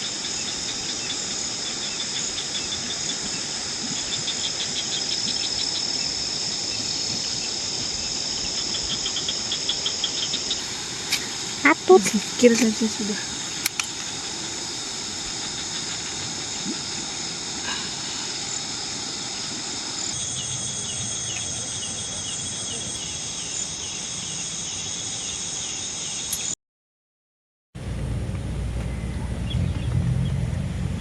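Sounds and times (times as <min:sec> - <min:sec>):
faint outdoor hiss: 0:00.0 - 0:26.5
insects trilling: 0:00.0 - 0:26.6.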